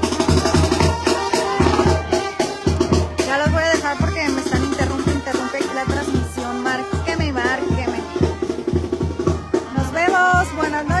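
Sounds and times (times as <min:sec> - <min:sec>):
brass band playing live: 0:00.0 - 0:11.0
brass melody: 0:00.0 - 0:11.0
drums: 0:00.0 - 0:11.0.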